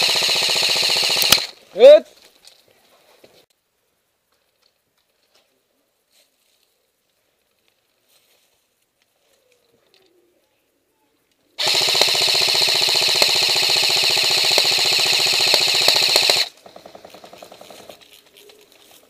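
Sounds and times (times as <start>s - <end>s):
gearbox whine: 0.0s - 1.6s, 11.6s - 18.2s
airsoft gun full-auto bursts: 0.0s - 1.9s, 11.6s - 18.0s.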